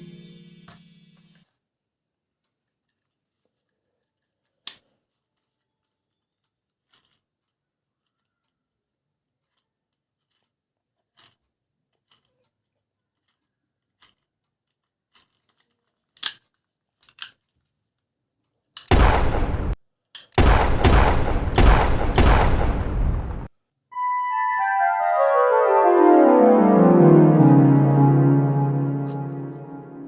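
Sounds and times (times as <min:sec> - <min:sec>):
plastic clicks and snips: 0:14.0 - 0:17.5.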